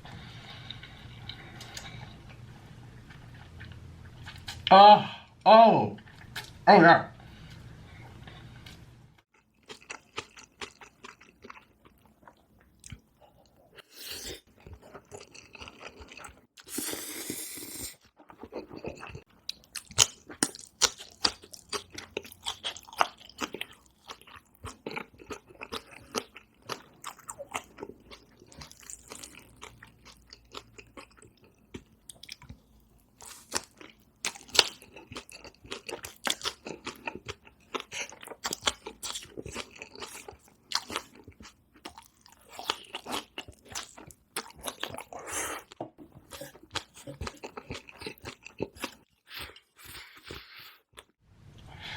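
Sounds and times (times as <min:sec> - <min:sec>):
chewing and crunching: 0:08.1 - 0:13.8, 0:14.5 - 0:16.8, 0:18.1 - 0:51.2.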